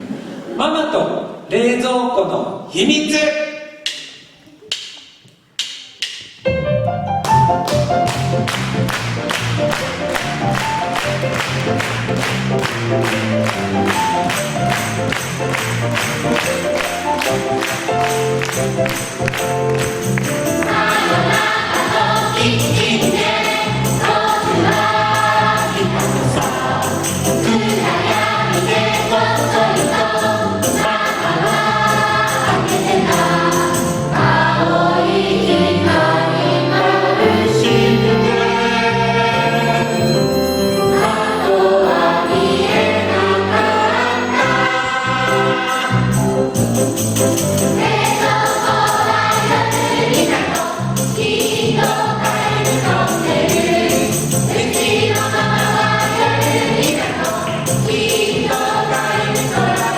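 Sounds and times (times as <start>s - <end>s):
instrumental accompaniment: 5.6s - 59.9s
jingling percussion: 8.1s - 59.9s
children's choir singing: 19.7s - 46.6s, 47.6s - 59.9s.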